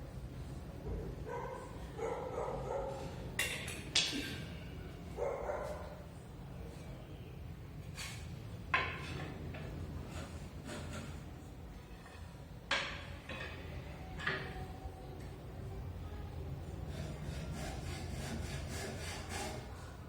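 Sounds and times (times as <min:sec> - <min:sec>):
dog barking: 0:01.3 - 0:03.1, 0:05.2 - 0:06.0.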